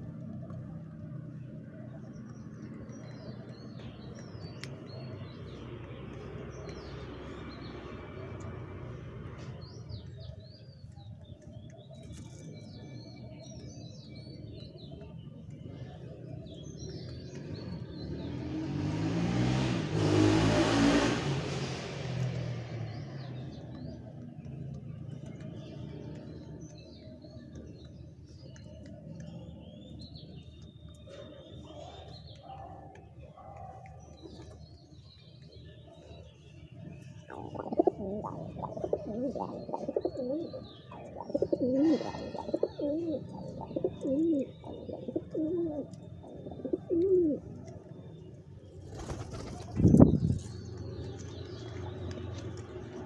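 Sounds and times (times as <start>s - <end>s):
small birds chirping: 0.0s - 19.6s, 22.2s - 53.0s
motor vehicle passing by: 2.0s - 10.6s, 16.5s - 26.8s, 34.1s - 53.0s.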